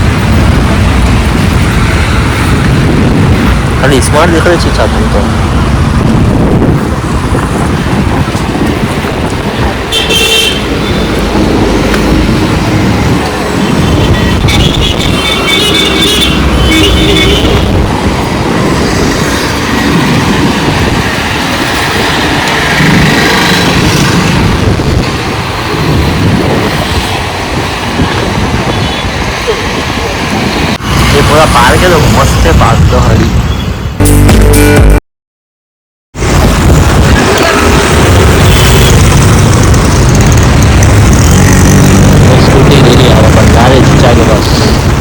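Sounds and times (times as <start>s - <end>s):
wind rumbling on microphone: 0.0s - 34.0s, 36.2s - 45.0s
road traffic: 0.0s - 35.0s, 36.1s - 45.0s
vehicle horns honking: 9.9s - 11.2s, 13.6s - 17.9s, 38.3s - 39.3s.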